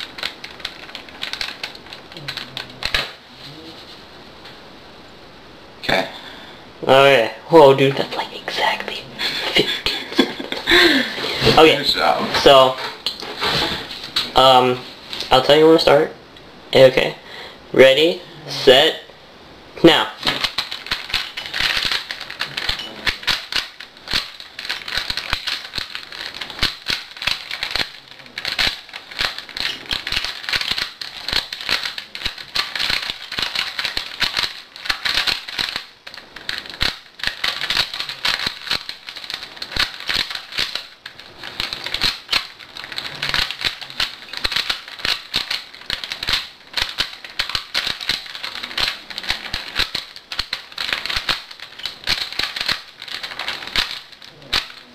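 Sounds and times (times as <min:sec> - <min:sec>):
puzzle cube plastic clicking: 0:00.0 - 0:03.1, 0:20.2 - 0:54.9.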